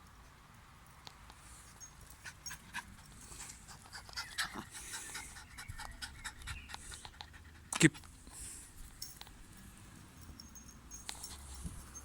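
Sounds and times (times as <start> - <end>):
dog panting: 2.1 - 7.8.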